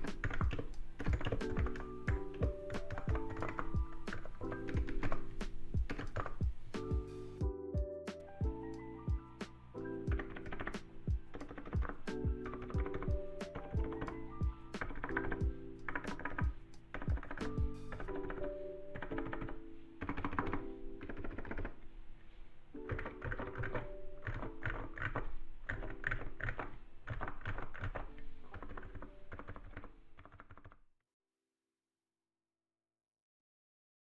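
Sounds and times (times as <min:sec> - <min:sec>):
soft keyboard keystrokes: 0:00.0 - 0:07.5, 0:08.1 - 0:21.9, 0:22.8 - 0:30.8
lo-fi background music: 0:00.0 - 0:21.8, 0:22.7 - 0:26.8.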